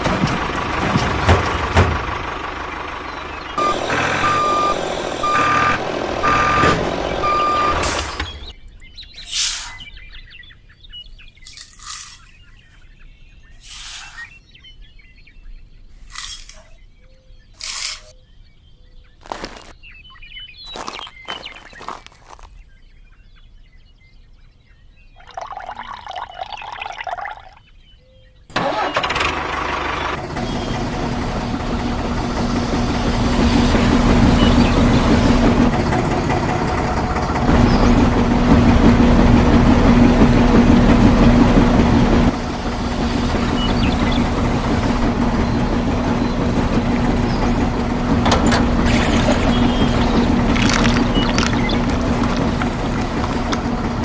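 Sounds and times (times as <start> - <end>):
small motor humming: 30.2 - 54.0.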